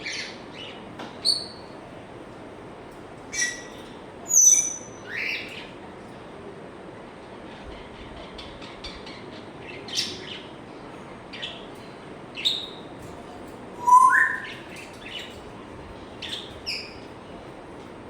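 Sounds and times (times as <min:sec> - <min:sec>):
parrot two-note whistle: 0:13.8 - 0:14.6
parrot chirps and clicks: 0:13.8 - 0:15.3.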